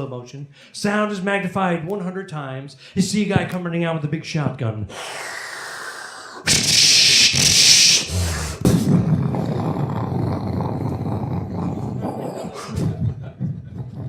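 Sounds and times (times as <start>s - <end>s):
mouth sound effect hissing blast: 4.9s - 9.0s.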